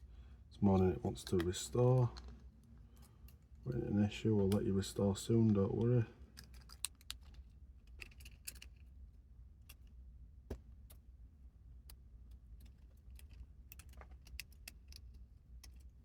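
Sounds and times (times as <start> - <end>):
steady low hum: 0.0 - 16.0
small parts clicking: 5.8 - 9.0, 9.6 - 10.0, 11.8 - 16.0.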